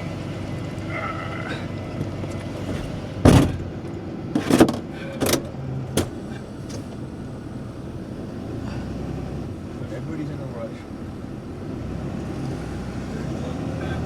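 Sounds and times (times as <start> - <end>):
truck engine and road rumble: 0.0 - 14.0
knocks and rattles: 2.0 - 6.9.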